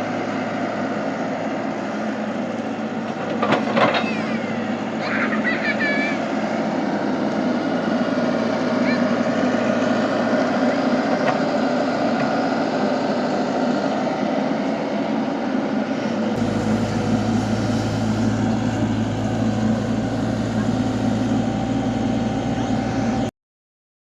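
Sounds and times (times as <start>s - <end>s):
deeper hum: 16.4s - 23.3s.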